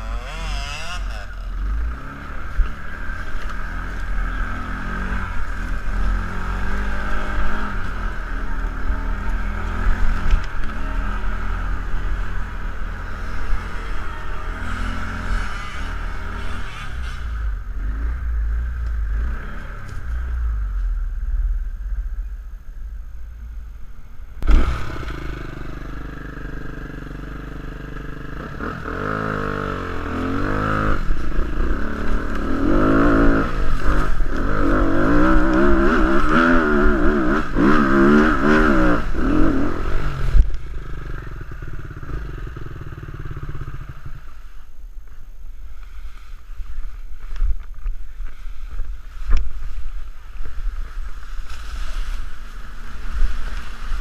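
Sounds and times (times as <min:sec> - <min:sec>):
atv engine revving: 0:00.0 - 0:21.6, 0:24.4 - 0:44.4.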